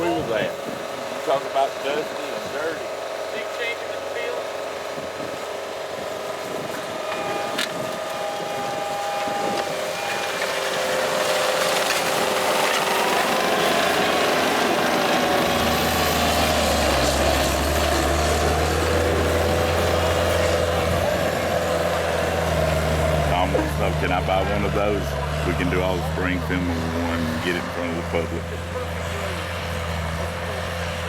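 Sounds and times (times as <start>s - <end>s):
skid steer engine under load: 0.0s - 31.0s
wavering whine: 5.9s - 29.4s
deep hum: 14.7s - 31.0s.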